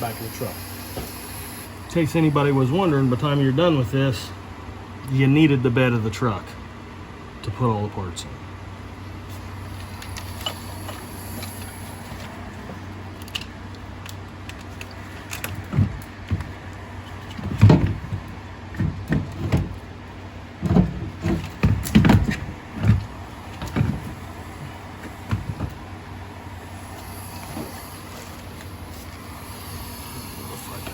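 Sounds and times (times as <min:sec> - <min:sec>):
steady low hum: 0:00.0 - 0:30.9
knocks and clunks of tools: 0:10.1 - 0:16.6, 0:17.2 - 0:19.9, 0:20.6 - 0:25.8.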